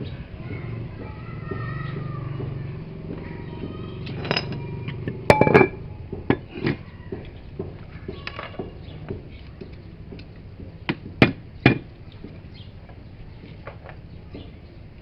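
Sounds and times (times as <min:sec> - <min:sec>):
knocks and clinks of hard objects: 0:02.5 - 0:12.5.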